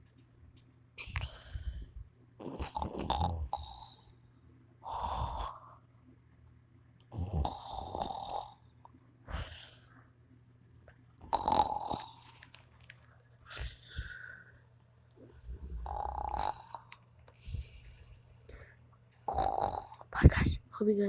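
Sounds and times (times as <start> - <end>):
man snoring: 2.4 - 4.1, 7.2 - 8.6, 11.2 - 12.2, 15.5 - 16.8, 19.3 - 20.0.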